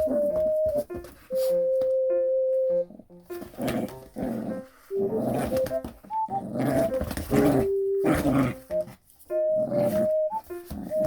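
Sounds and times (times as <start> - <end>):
background music: 0.0 - 11.0
small dog growling: 6.4 - 8.6.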